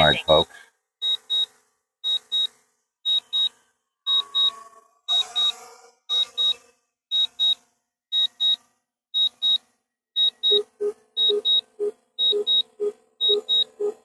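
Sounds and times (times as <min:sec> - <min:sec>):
lower-pitched paired beeps: 0:03.1 - 0:07.6, 0:10.2 - 0:14.0
high paired beeps: 0:10.2 - 0:14.0.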